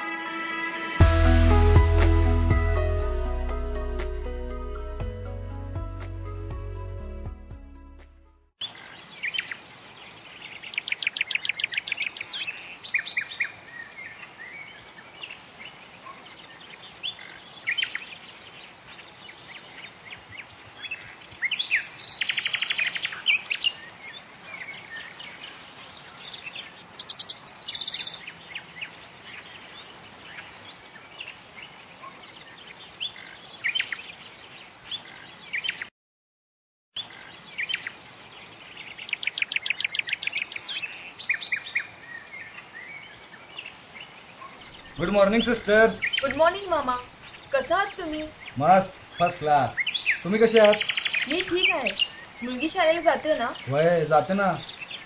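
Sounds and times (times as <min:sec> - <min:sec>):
birds chirping and singing: 0:19.0 - 0:29.1, 0:38.7 - 0:55.0
faint steady hiss: 0:37.1 - 0:55.0.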